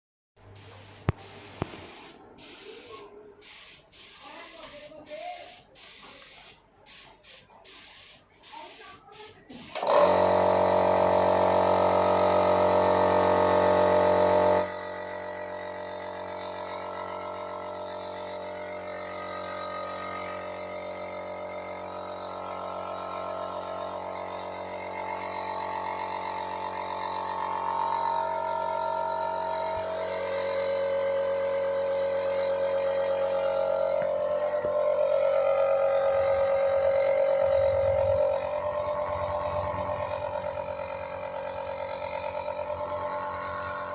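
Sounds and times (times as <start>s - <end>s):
power tool motor droning: 9.6s - 43.9s.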